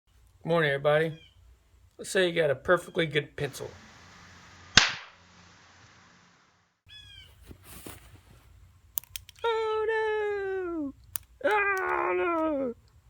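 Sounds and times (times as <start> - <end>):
sharp snap: 4.7 - 5.2
long high wailing cry: 9.5 - 12.8.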